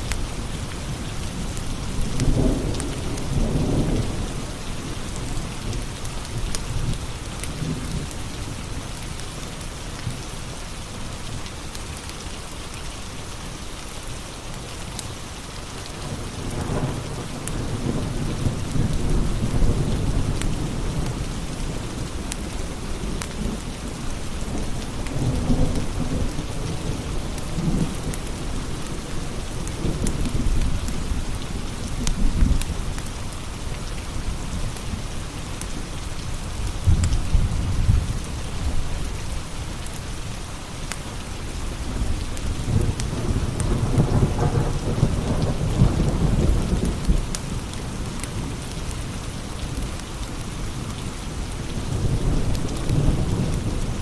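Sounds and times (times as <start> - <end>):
steady rain: 0.0 - 54.0
thunder rumbling: 41.8 - 48.8.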